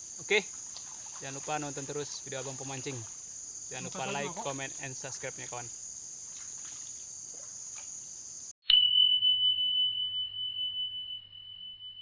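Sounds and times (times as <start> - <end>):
high insect chorus: 0.0 - 8.6.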